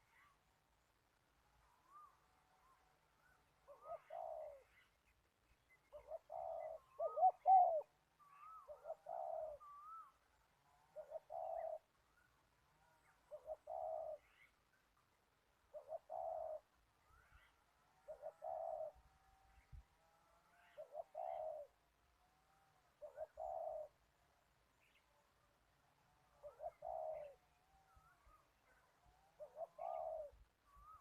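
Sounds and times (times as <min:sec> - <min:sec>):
dove cooing: 0:03.6 - 0:04.7, 0:05.9 - 0:10.2, 0:10.9 - 0:12.0, 0:13.2 - 0:14.2, 0:15.7 - 0:16.8, 0:18.0 - 0:19.8, 0:20.5 - 0:21.8, 0:22.9 - 0:24.0, 0:26.3 - 0:27.4, 0:29.3 - 0:31.0.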